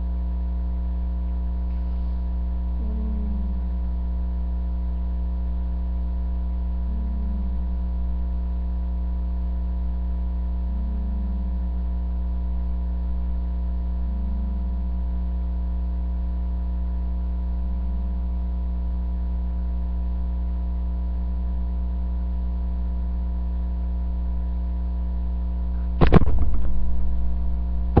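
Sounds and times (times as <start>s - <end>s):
steady low hum: 0.0s - 28.0s
person snoring faintly: 1.7s - 3.8s, 6.7s - 7.8s, 10.6s - 11.8s, 14.0s - 15.0s
loud clatter: 26.0s - 28.0s.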